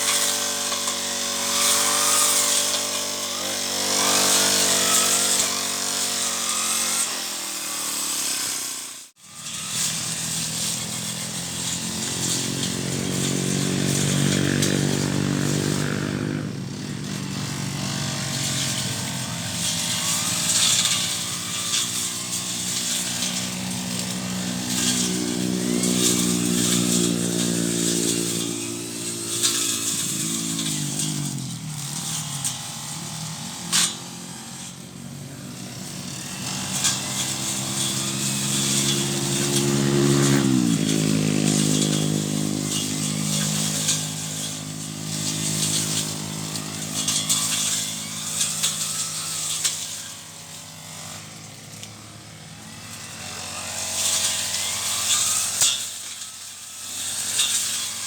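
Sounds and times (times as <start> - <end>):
brush cutter engine cutting weeds: 0.0 - 58.0.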